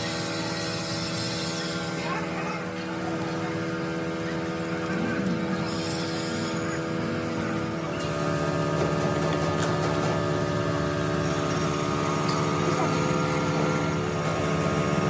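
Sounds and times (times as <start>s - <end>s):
machine humming: 3.8s - 9.2s.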